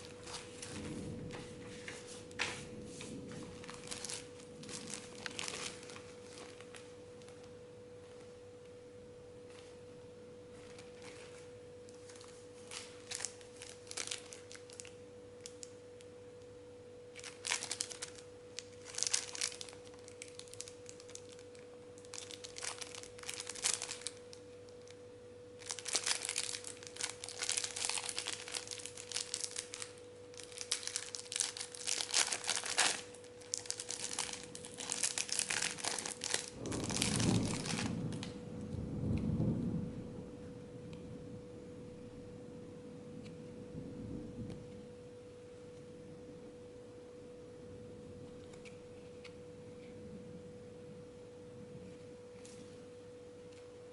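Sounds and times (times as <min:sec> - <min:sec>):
plastic packaging crinkling and tearing: 0:00.0 - 0:08.3, 0:10.5 - 0:16.1, 0:17.1 - 0:25.0, 0:25.6 - 0:38.4
faint steady hum: 0:00.0 - 0:53.9.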